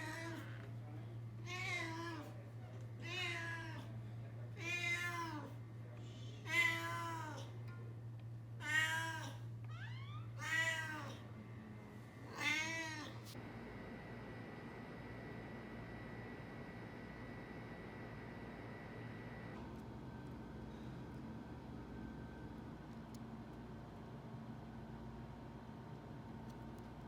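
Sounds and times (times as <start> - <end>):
cat meowing: 3.0 - 3.9, 4.6 - 5.5, 6.5 - 7.5, 8.6 - 11.2, 12.3 - 13.2.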